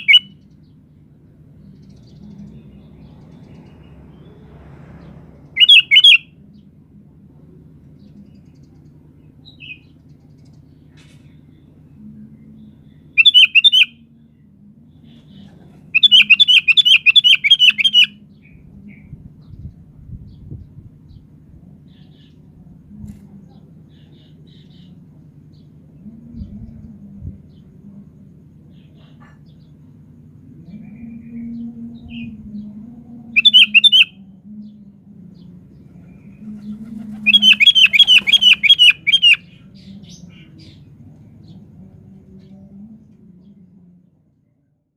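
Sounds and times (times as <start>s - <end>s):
bird chirping: 0.0s - 0.8s, 5.0s - 6.6s, 12.4s - 14.0s, 15.0s - 19.6s, 33.4s - 42.7s
faint low hum: 0.0s - 5.6s, 6.2s - 44.9s
bird chattering calls: 5.6s - 6.2s, 15.3s - 18.1s, 33.4s - 34.1s, 36.5s - 39.7s.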